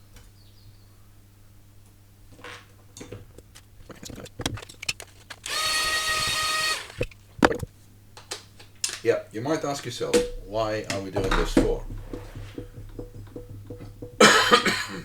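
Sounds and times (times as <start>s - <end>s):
small tools clicking and knocking: 2.4s - 9.0s
small electric motor whirring: 4.9s - 7.2s.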